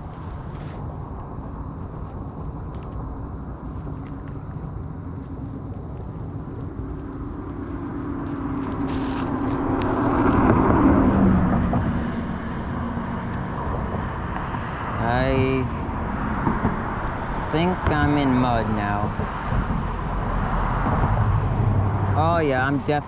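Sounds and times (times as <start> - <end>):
outdoor background noise: 0.0 - 23.0
motor vehicle passing by: 6.9 - 23.0.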